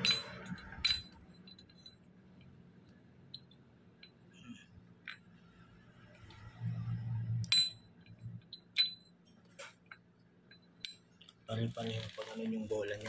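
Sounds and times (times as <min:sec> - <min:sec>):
metal parts clinking: 0:00.0 - 0:02.4, 0:07.4 - 0:13.0.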